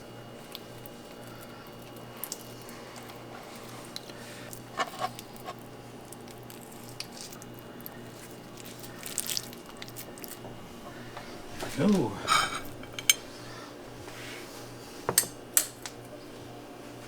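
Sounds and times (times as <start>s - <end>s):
low steady hum: 0.0s - 17.0s
wet handling of raw meat: 0.4s - 12.2s.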